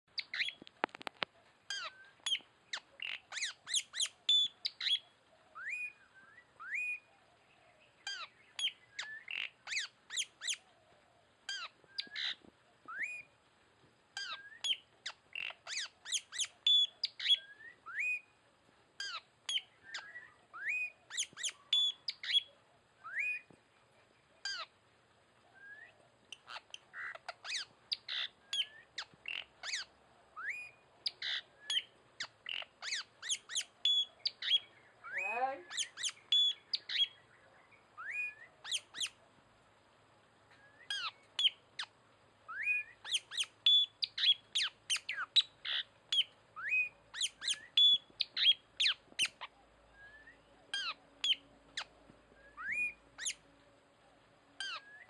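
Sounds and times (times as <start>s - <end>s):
rapid bird chirps: 0.1s - 0.6s, 1.7s - 10.7s, 11.5s - 13.4s, 14.2s - 18.4s, 19.0s - 23.5s, 25.6s - 39.2s, 40.5s - 53.4s, 54.6s - 55.0s
rising whistled bird notes: 32.9s - 39.2s, 42.5s - 49.0s, 49.9s - 53.4s.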